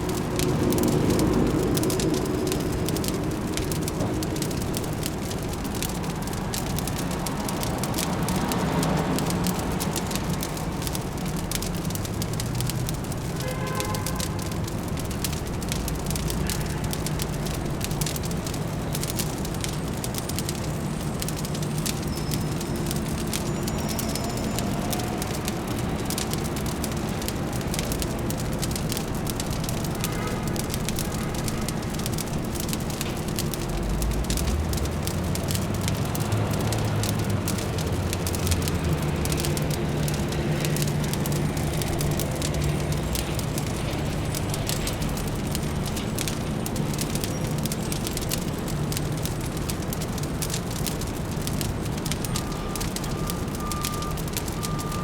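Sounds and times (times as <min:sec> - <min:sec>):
deep rumble: 0:00.0 - 0:09.9, 0:32.0 - 0:52.1
low city hum: 0:00.0 - 0:55.0
wood fire crackling: 0:00.0 - 0:55.0.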